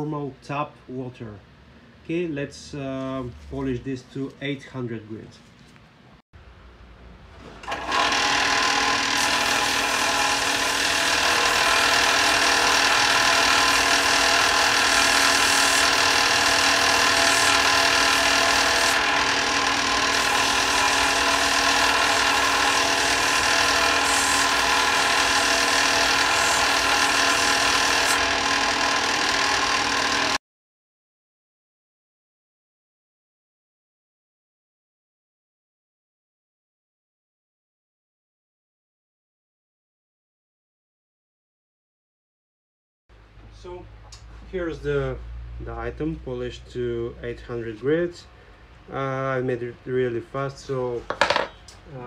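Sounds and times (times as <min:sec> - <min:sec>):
electric power tool motor whine: 0:07.6 - 0:30.4.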